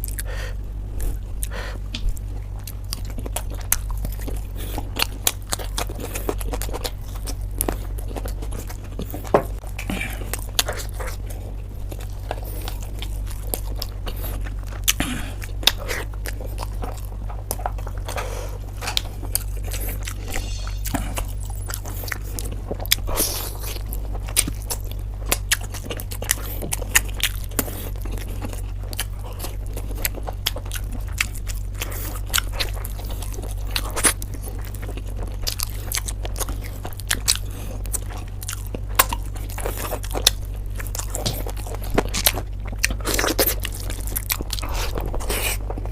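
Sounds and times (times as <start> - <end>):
low hum: 0.0 - 45.9
person chewing crunchy food: 0.0 - 45.9.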